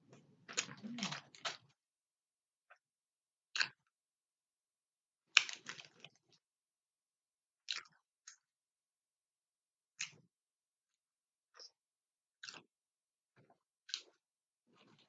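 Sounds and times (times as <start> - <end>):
chewing and mouth clicks: 0.5 - 1.6, 7.7 - 8.4, 12.4 - 12.7.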